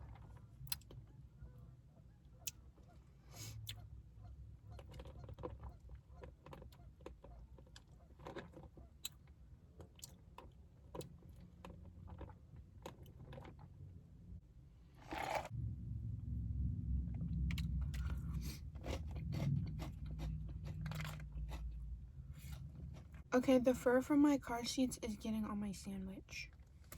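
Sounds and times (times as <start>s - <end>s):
chewing and crunching: 0.0s - 1.2s, 2.2s - 4.0s, 4.6s - 13.8s, 17.5s - 23.4s
low rumble: 14.2s - 25.5s.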